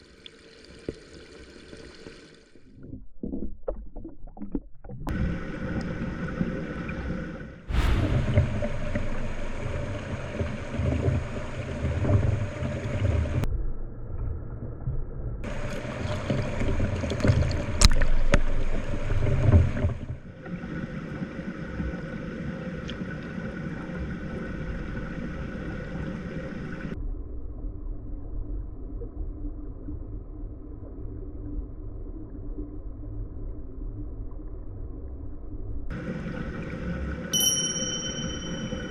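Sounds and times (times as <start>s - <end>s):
sharp knock: 7.7s - 10.1s.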